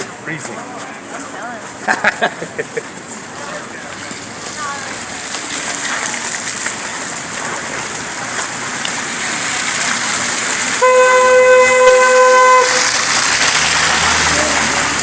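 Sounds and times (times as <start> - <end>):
street traffic: 0.0 - 15.0
vehicle horn blast: 10.8 - 13.1.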